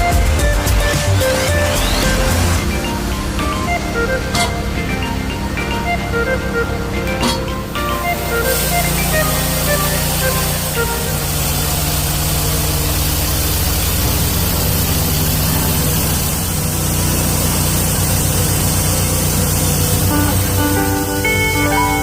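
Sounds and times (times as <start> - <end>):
band sawmill engine hum: 0.0 - 22.0
saw hiss: 8.1 - 22.0.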